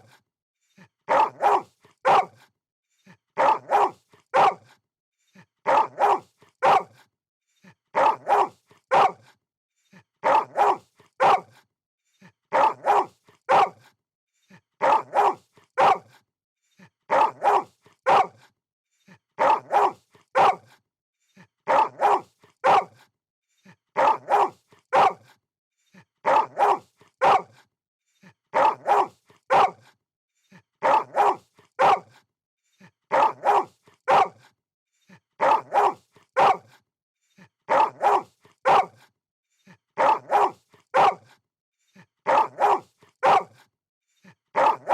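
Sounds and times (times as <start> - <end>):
dog barking: 1.1 - 2.4, 3.4 - 4.8, 5.6 - 7.0, 8.0 - 9.3, 10.2 - 11.6, 12.5 - 13.8, 14.8 - 16.2, 17.1 - 18.5, 19.4 - 20.8, 21.7 - 23.0, 24.0 - 25.3, 26.2 - 27.6, 28.5 - 30.0, 30.8 - 32.2, 33.1 - 34.5, 35.4 - 36.8, 37.7 - 39.1, 40.0 - 41.4, 42.2 - 43.7, 44.5 - 44.9.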